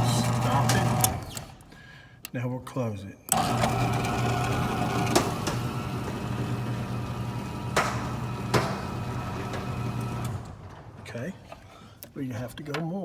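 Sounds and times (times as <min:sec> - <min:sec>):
door operator motor running: 0:00.0 - 0:01.6, 0:03.3 - 0:11.0.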